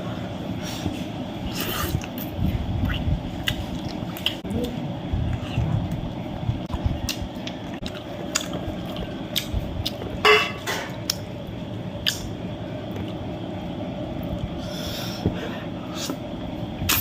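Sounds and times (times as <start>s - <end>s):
wet chewing and squelching: 1.5s - 10.2s.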